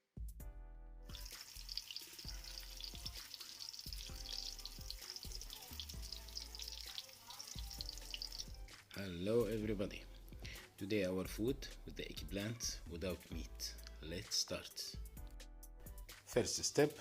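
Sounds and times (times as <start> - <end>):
background music: 0.0 - 17.0
food sizzling in hot oil: 1.1 - 8.8.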